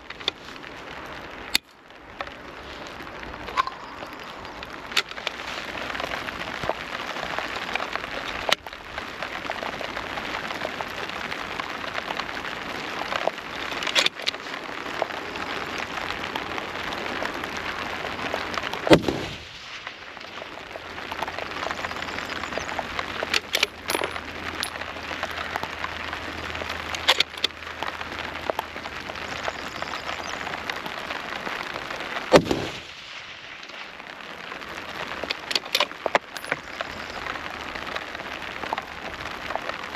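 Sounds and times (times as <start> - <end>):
rain hissing and pattering: 0.0 - 39.9
small clicks and knocks: 13.1 - 15.1, 22.5 - 28.7, 35.1 - 37.3
rifle shots: 32.3 - 32.9.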